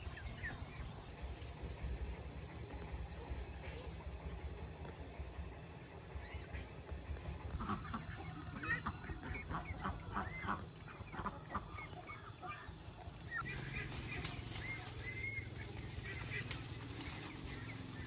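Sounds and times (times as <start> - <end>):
farm fowl calling: 7.5 - 18.0.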